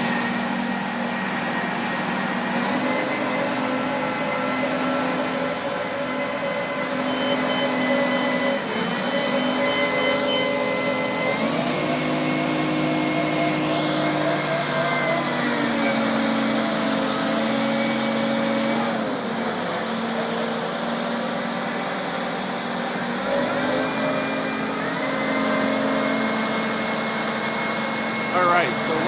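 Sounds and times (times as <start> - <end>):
crane engine running: 0.0 - 29.0.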